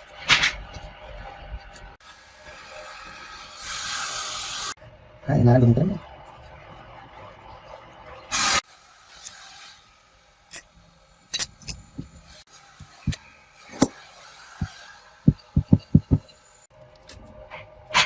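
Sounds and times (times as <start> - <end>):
metal parts knocking and clinking: 11.4 - 12.2.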